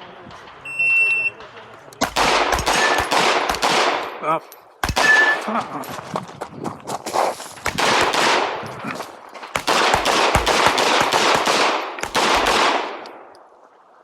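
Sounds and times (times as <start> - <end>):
pistol shots in rapid strings: 1.4 - 4.2, 4.8 - 5.5, 7.6 - 8.6, 9.4 - 13.3.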